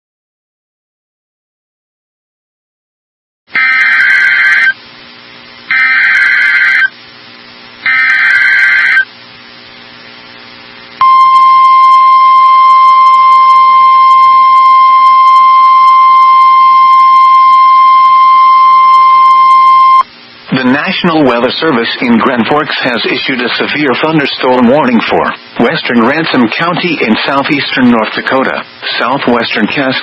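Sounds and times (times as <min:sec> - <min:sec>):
steady warning alarm tone: 0:03.6 - 0:04.8, 0:05.7 - 0:06.9, 0:07.8 - 0:09.1, 0:11.0 - 0:20.0.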